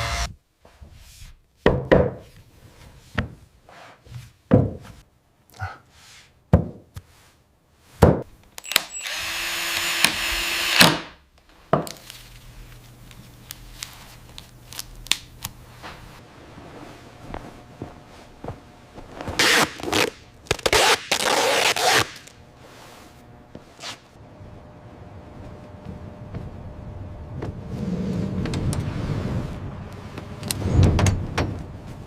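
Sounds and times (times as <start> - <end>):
tool knocks and thunks: 4.5 - 5.0
power tool whirring: 8.6 - 11.0
low steady hum: 11.3 - 32.0.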